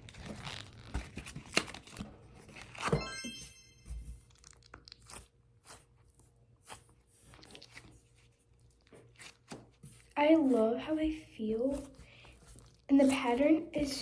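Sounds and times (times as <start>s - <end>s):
packaging crackling and rustling: 0.0s - 2.9s.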